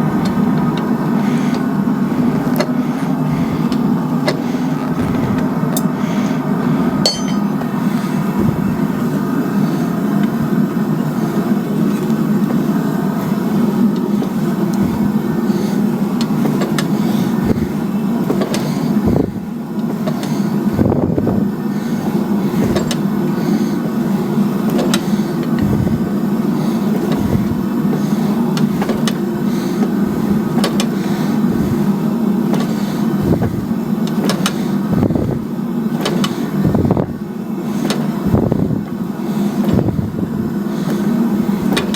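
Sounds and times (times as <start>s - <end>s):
sharp metallic clicks and knocks: 7.0s - 7.6s.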